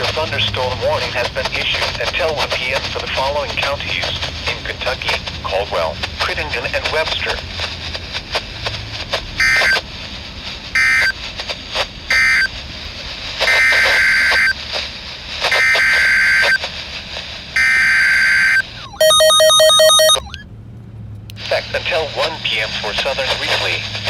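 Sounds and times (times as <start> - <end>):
radio static crackle: 0.0 - 20.4, 21.4 - 24.0
data bursts: 9.4 - 9.8, 10.8 - 11.2, 12.1 - 12.5, 13.5 - 14.6, 15.5 - 16.6, 17.6 - 20.4.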